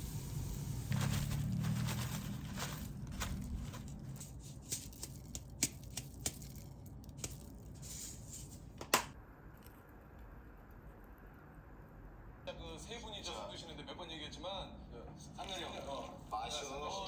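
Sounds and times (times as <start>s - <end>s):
small objects clicking and rustling: 0.8s - 8.7s.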